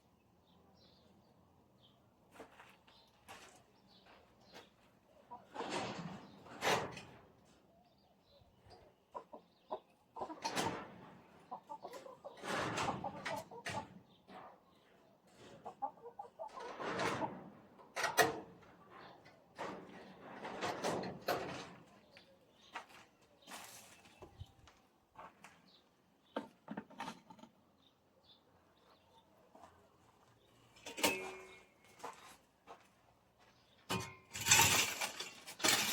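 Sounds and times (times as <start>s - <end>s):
hens clucking: 8.7s - 14.6s, 15.4s - 17.5s.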